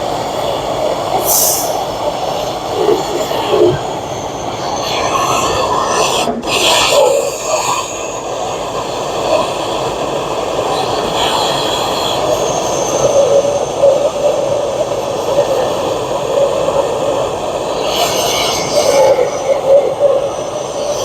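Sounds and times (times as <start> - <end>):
torch burning with rushing roar: 1.0 - 12.2.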